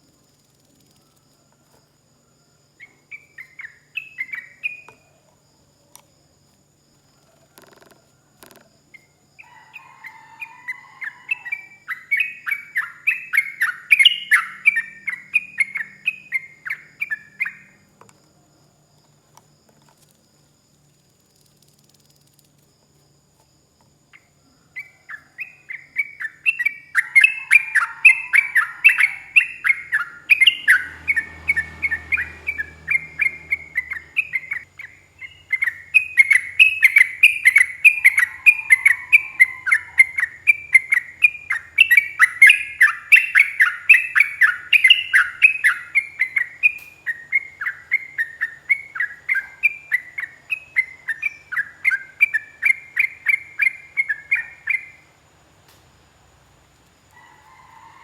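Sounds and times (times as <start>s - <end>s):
bird singing chirped notes: 11.1s - 17.8s, 25.2s - 55.0s.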